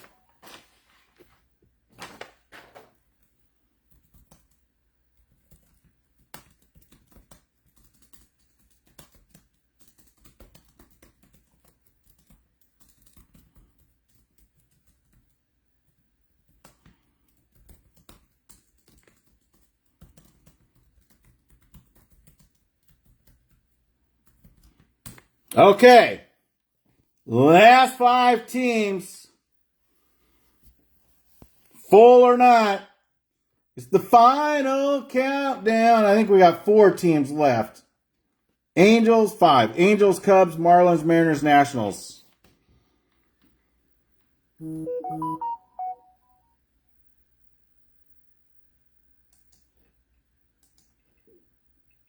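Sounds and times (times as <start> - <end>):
keyboard typing: 3.9 - 26.0, 44.6 - 46.1, 49.3 - 51.2.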